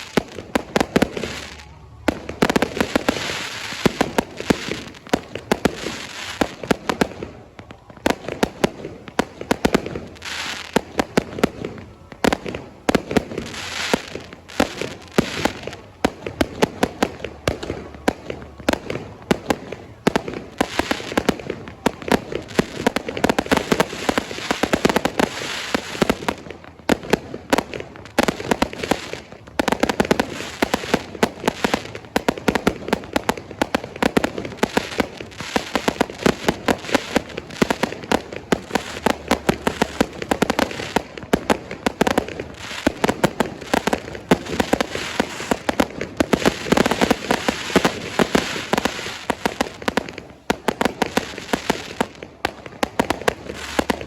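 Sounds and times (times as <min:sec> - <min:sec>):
fireworks bangs and pops: 0:00.0 - 0:54.0
fireworks crackling: 0:00.0 - 0:54.0.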